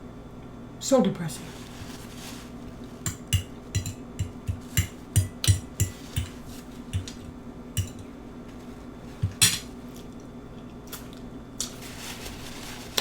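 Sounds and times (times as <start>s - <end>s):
cutlery tapping against a plate: 3.1s - 8.1s, 9.2s - 9.7s.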